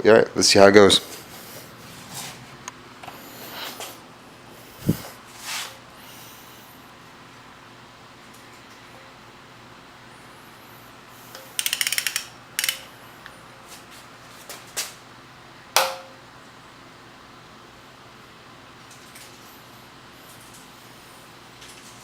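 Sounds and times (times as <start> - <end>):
steady low hum: 0.0 - 22.0
ratchet wrench clicking: 11.3 - 12.9.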